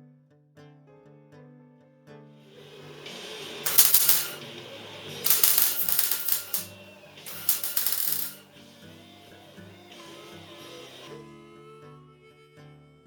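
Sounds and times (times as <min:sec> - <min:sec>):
welder crackling: 0:03.6 - 0:04.5, 0:05.2 - 0:08.4.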